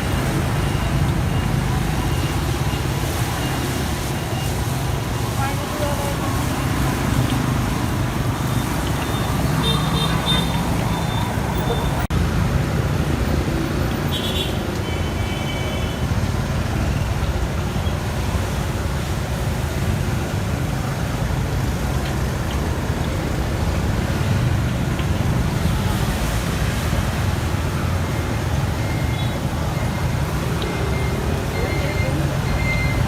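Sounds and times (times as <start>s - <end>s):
road traffic noise: 0.0s - 33.0s
short beeping tone: 28.8s - 33.0s.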